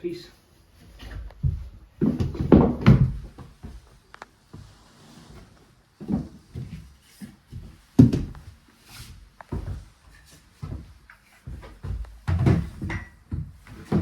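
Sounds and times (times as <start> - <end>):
wooden knocks on floor: 1.0 - 3.8.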